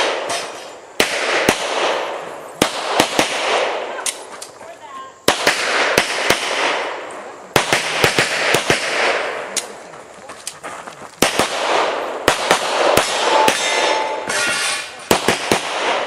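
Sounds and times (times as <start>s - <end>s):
rapid pistol shots with echo: 0.0s - 3.9s, 5.3s - 9.8s, 11.2s - 14.2s, 15.1s - 16.0s.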